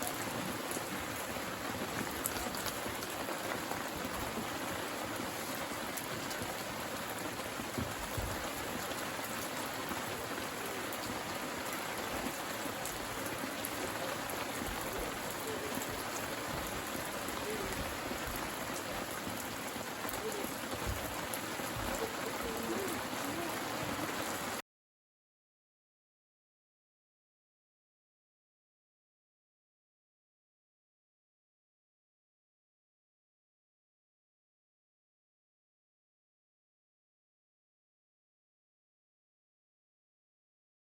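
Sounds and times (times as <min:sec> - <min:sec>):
raindrop ticks: 0:00.0 - 0:24.6
steady rain falling: 0:00.0 - 0:24.6.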